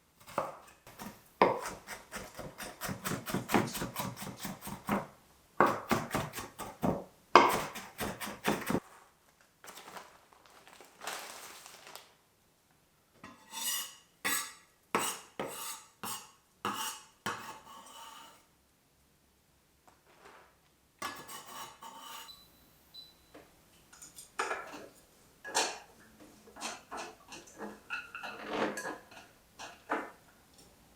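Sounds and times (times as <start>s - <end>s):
dishes and cutlery clinking: 23.9s - 25.9s, 26.5s - 30.7s.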